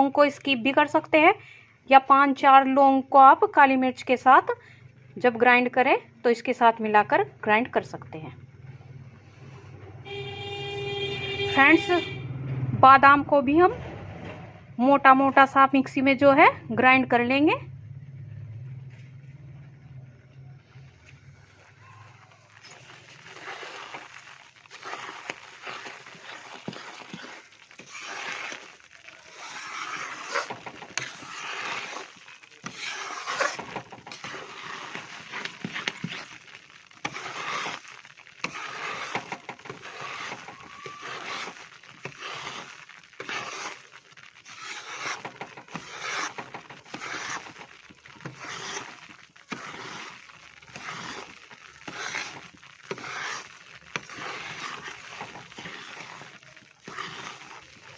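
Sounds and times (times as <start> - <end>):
spatula scraping a pan: 22.5 - 57.9.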